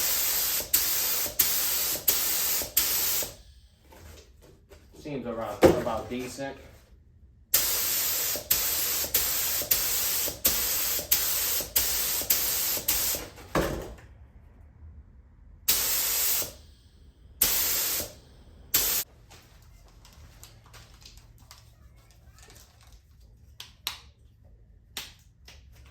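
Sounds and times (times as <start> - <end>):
paint spray gun hissing: 0.0 - 3.4, 7.6 - 13.3, 15.7 - 16.6, 17.4 - 19.0.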